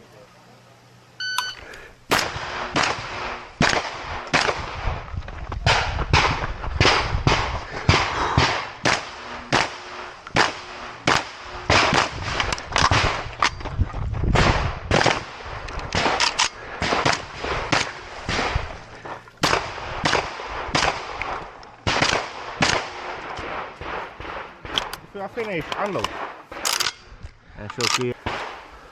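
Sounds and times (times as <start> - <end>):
shotgun shots with echo: 2.1 - 5.0, 5.7 - 13.3, 19.4 - 26.9, 28.2 - 28.7.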